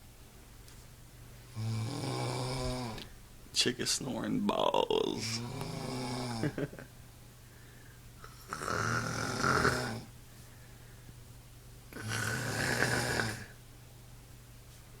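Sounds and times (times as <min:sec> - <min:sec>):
person snoring: 0:01.5 - 0:03.1, 0:04.8 - 0:06.9, 0:08.2 - 0:10.1, 0:11.9 - 0:13.6.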